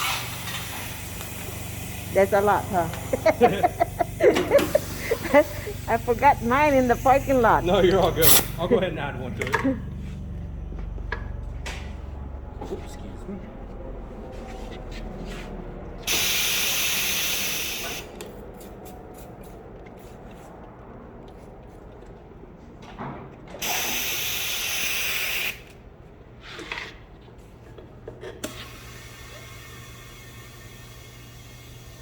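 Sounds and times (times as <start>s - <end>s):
compressed air hissing: 0.0s - 9.2s, 16.0s - 18.3s, 23.6s - 25.7s.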